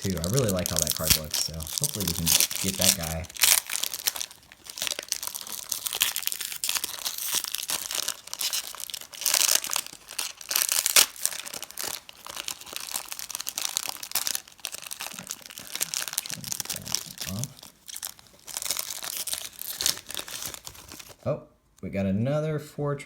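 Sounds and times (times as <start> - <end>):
wrapper crinkling and tearing: 0.0 - 21.2.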